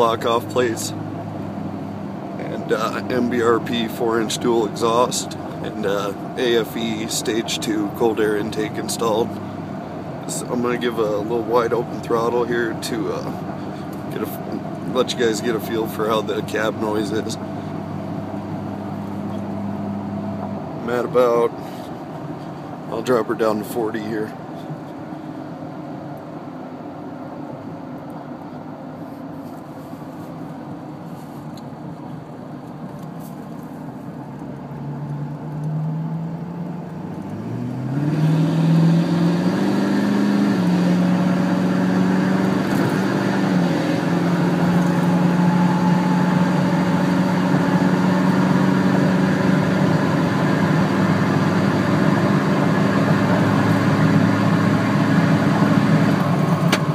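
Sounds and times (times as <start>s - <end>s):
diesel truck engine revving: 0.0s - 22.0s, 34.6s - 56.9s.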